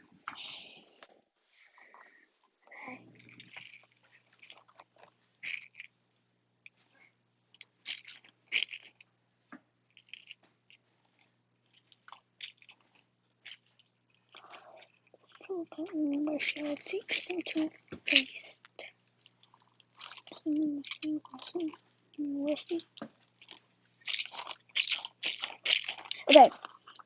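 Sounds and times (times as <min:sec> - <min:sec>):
faint low hum: 0:00.0 - 0:27.0
dog crunching food: 0:03.2 - 0:05.9, 0:07.6 - 0:09.0, 0:09.9 - 0:10.4, 0:11.7 - 0:18.4, 0:19.0 - 0:27.0.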